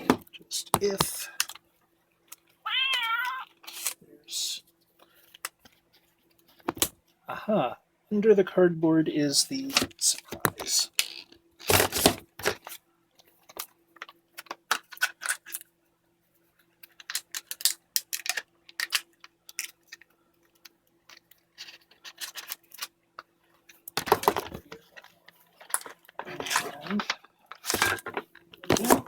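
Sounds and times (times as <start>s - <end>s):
cardboard being rummaged: 25.7s - 29.0s.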